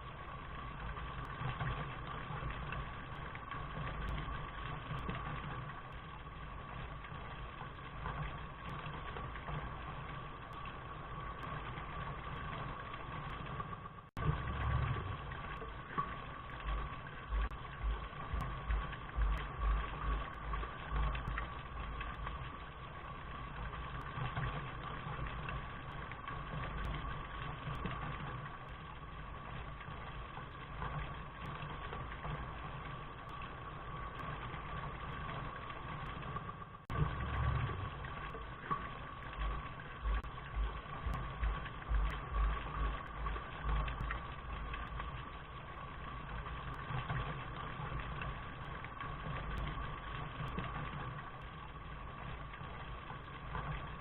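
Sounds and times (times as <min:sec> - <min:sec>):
steady rain: 0:00.0 - 0:54.0
low rumble: 0:00.1 - 0:34.7, 0:35.5 - 0:54.0
low thumps: 0:17.3 - 0:21.4, 0:39.4 - 0:44.2.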